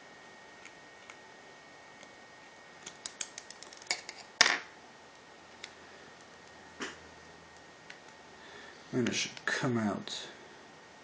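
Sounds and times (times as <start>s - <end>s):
small tool clicking on phone parts: 2.8s - 4.2s.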